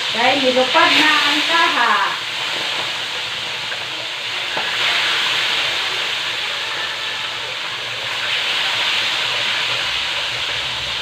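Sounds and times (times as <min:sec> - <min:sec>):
fish sizzling in hot oil: 0:00.0 - 0:11.0.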